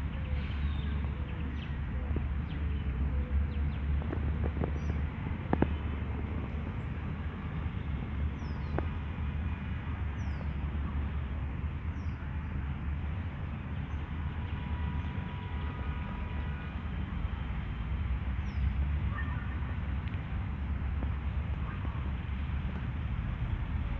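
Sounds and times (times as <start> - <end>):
steady low rumble: 0.0 - 23.9
small birds chirping: 0.1 - 5.8, 8.3 - 8.9.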